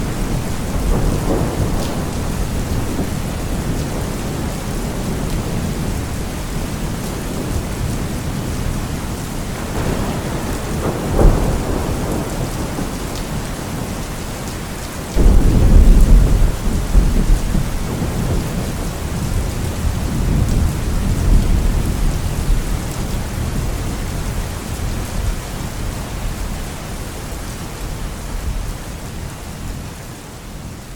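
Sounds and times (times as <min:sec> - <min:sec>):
loud thunderclap: 0:00.0 - 0:06.0, 0:09.6 - 0:13.9, 0:15.1 - 0:23.6
thunder rumbling: 0:00.0 - 0:14.3, 0:15.1 - 0:26.6
steady rain: 0:00.0 - 0:30.9.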